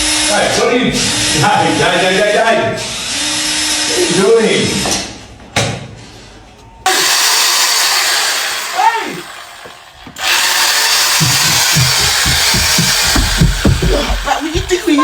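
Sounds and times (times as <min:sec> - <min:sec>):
electric drill running: 0:02.8 - 0:04.1, 0:06.9 - 0:15.0
steady beat: 0:10.8 - 0:15.0.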